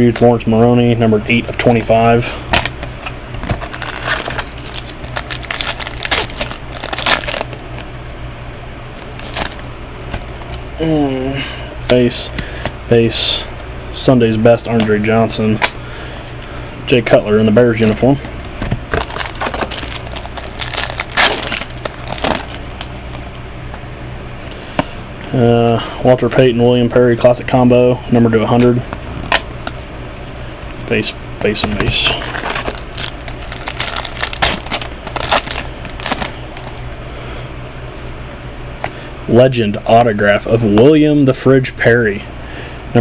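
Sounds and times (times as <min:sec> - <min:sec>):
steady low hum: 0:00.0 - 0:43.0
card packaging crinkling: 0:02.5 - 0:07.9, 0:09.0 - 0:09.6, 0:18.6 - 0:23.2, 0:31.5 - 0:36.8.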